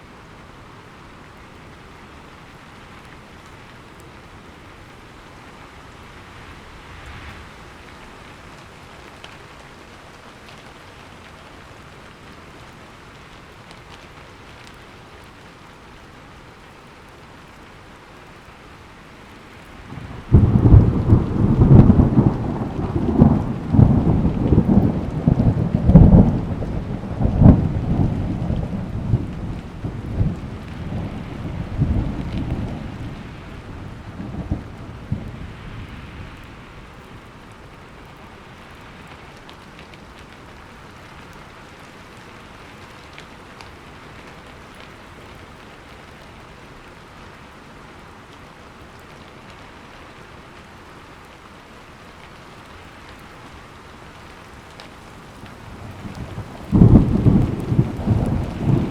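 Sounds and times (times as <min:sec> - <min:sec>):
heavy rain: 0:00.0 - 0:58.9
thunder rolling and cracking: 0:19.9 - 0:36.4, 0:55.7 - 0:58.9.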